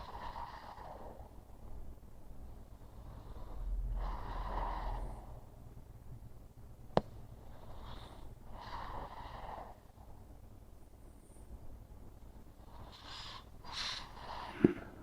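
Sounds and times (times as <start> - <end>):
dog breathing noisily: 12.5 - 15.0.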